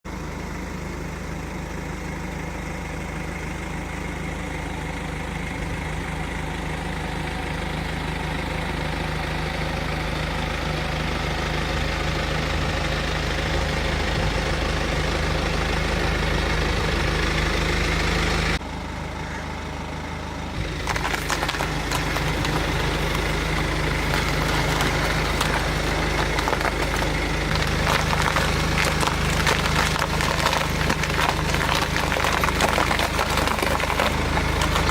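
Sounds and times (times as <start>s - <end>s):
car engine running: 0.0s - 34.9s
nuts crushed under tyres: 20.6s - 34.9s.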